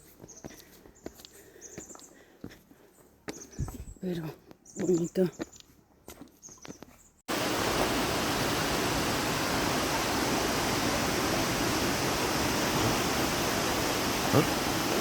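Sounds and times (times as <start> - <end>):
waterfall roaring: 7.3 - 15.0.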